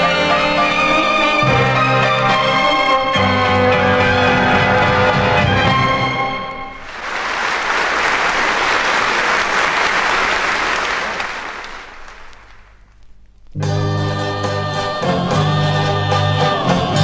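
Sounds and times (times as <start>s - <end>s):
audience applause: 6.5s - 12.8s.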